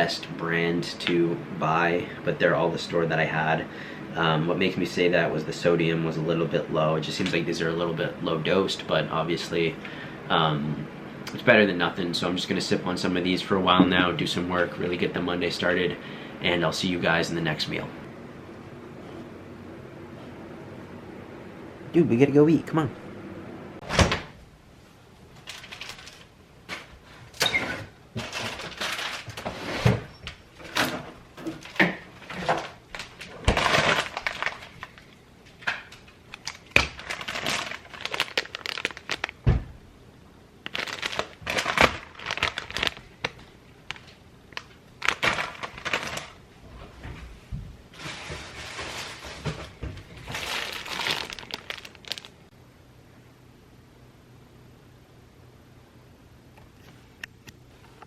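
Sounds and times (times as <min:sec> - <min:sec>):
crinkling and rustling: 0:25.2 - 0:39.7, 0:40.6 - 0:52.5.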